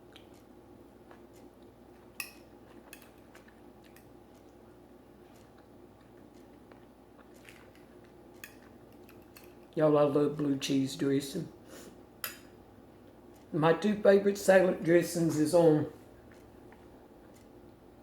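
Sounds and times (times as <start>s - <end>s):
faint steady hum: 0.0s - 18.0s
cutlery clicking against plate: 2.2s - 3.2s, 8.4s - 9.7s, 12.2s - 12.6s.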